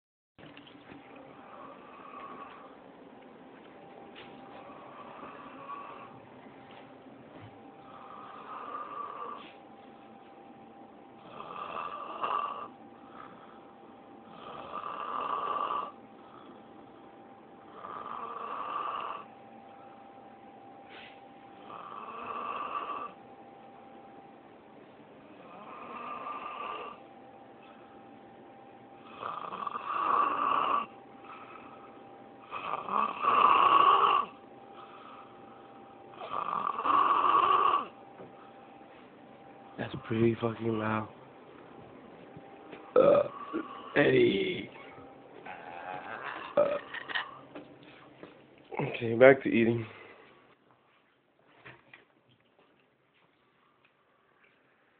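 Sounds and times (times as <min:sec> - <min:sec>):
quiet breathing: 0:01.1 - 0:02.9, 0:04.2 - 0:06.8, 0:07.6 - 0:09.8, 0:15.4 - 0:18.4, 0:30.4 - 0:32.9, 0:34.2 - 0:36.8, 0:49.8 - 0:51.0, 0:53.2 - 0:54.9
man snoring loudly: 0:04.7 - 0:06.1, 0:07.8 - 0:09.4, 0:11.2 - 0:16.6, 0:17.6 - 0:19.3, 0:21.6 - 0:23.2, 0:25.4 - 0:27.0, 0:29.0 - 0:31.8, 0:32.4 - 0:34.3, 0:36.1 - 0:38.0, 0:43.0 - 0:44.7, 0:45.5 - 0:46.8.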